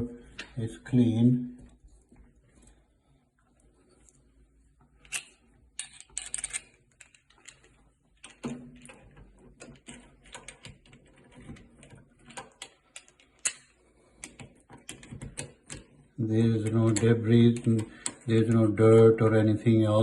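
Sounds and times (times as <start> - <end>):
small clicks and scrapes of handling: 3.4 - 18.6.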